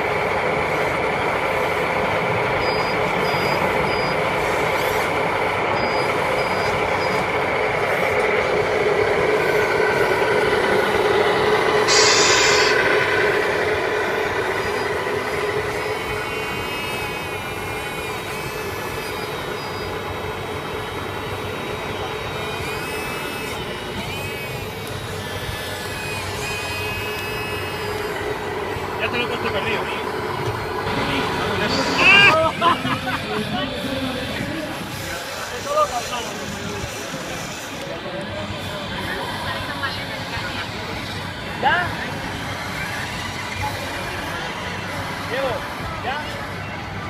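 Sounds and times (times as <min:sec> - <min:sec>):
truck engine running: 0:00.0 - 0:47.0
air brake hiss: 0:11.9 - 0:13.1.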